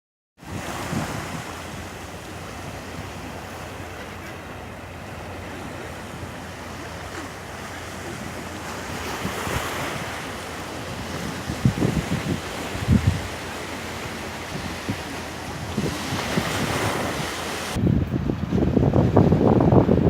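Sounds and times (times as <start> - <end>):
sea surf washing ashore: 0.4 - 20.0
wind rumbling on microphone: 0.4 - 20.0.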